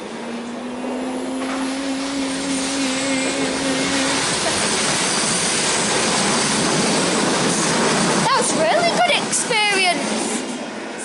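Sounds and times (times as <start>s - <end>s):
steady low hum: 0.0s - 7.9s
train rushing rumble: 0.0s - 11.0s.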